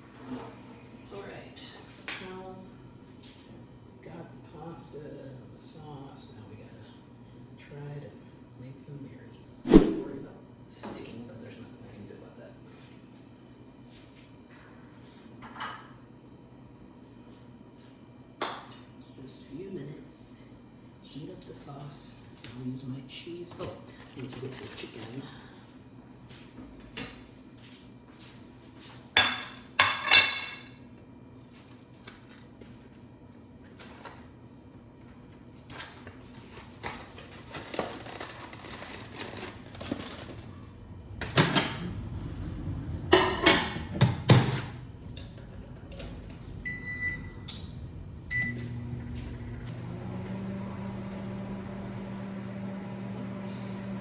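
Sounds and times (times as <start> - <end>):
microwave oven humming: 0.0 - 54.0
dishes clattering: 29.2 - 30.7, 43.1 - 44.5
microwave keypad beeps: 46.6 - 47.5, 48.3 - 48.7.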